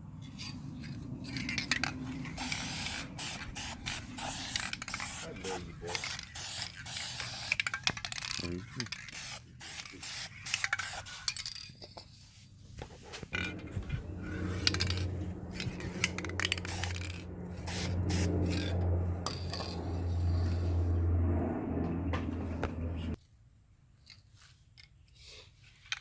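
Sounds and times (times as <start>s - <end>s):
hard objects clicking and scraping: 0.3s - 20.6s
steady low hum: 12.6s - 23.2s.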